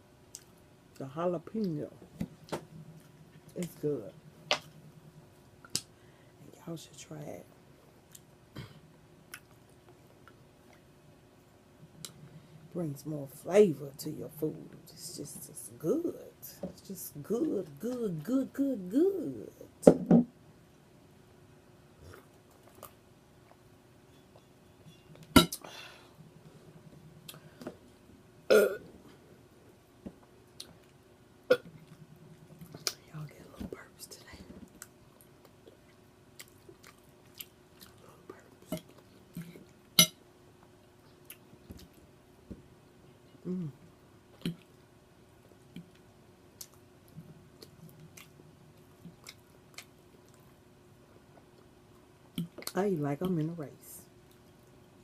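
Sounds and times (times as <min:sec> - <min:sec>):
woman burping: 0:28.5 - 0:28.8
person chewing food: 0:34.7 - 0:39.9, 0:40.6 - 0:42.1, 0:45.7 - 0:50.6.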